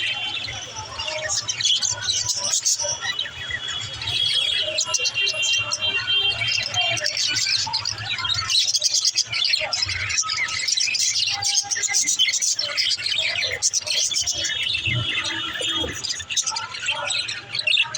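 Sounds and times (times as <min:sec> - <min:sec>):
budgerigars chirping: 0:00.0 - 0:17.8
whistled bird notes: 0:00.0 - 0:17.9.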